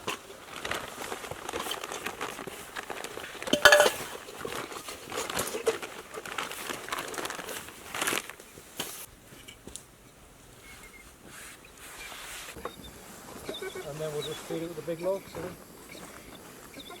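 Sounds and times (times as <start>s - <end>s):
camp kit crinkling and rustling: 0.0s - 9.9s
metallic clink: 3.6s - 4.1s.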